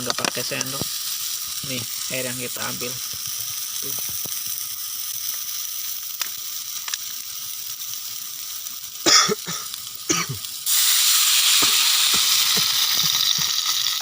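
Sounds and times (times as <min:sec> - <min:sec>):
food sizzling in a pan: 0:00.0 - 0:14.0
water hissing in hot pan: 0:00.0 - 0:14.0.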